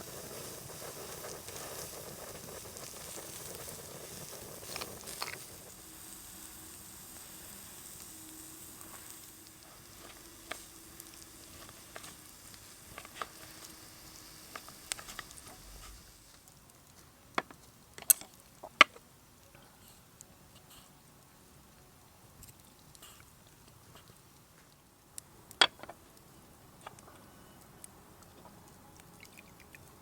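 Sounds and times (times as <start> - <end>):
food sizzling in a pan: 0.0 - 17.0.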